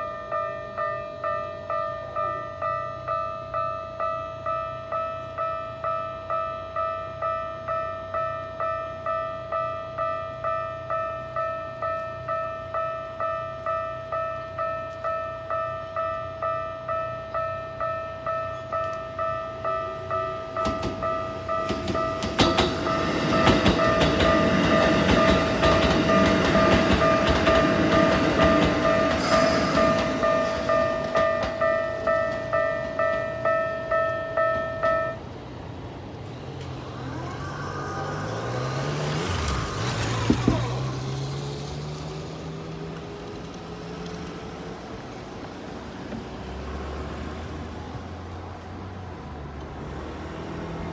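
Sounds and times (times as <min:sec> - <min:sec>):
electric train whine: 0:00.0 - 0:50.9
level crossing bell ringing: 0:17.9 - 0:20.5
train wheel clatter: 0:20.6 - 0:35.1.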